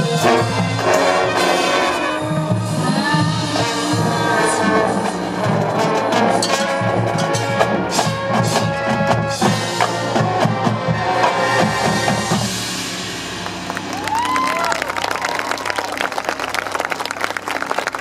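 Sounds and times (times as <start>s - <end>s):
brass chords: 0.0s - 13.9s.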